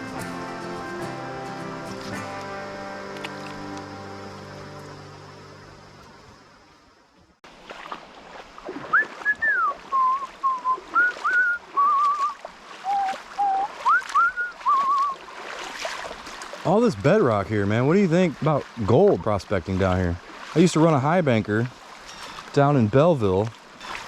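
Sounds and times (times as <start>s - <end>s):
creek rushing with splashes: 0.0s - 24.0s
person whistling a tune: 8.9s - 15.2s.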